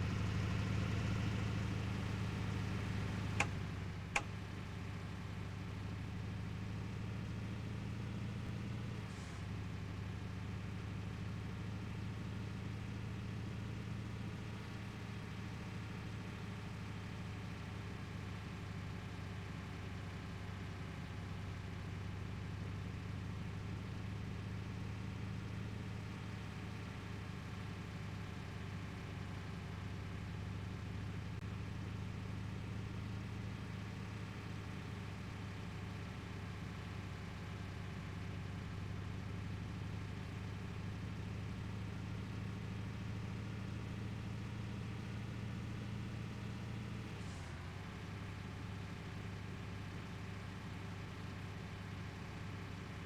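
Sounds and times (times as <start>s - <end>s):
truck engine running: 0.0s - 11.2s.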